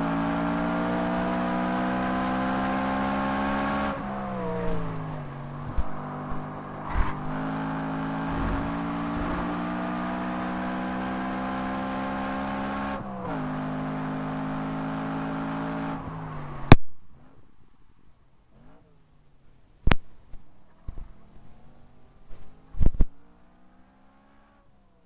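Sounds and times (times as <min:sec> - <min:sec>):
car engine pulling hard: 0:00.0 - 0:17.6.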